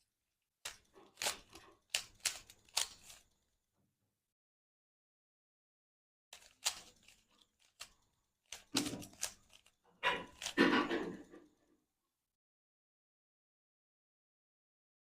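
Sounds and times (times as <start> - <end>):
puzzle cube clicking and rasping: 0.6 - 3.4, 6.4 - 11.3.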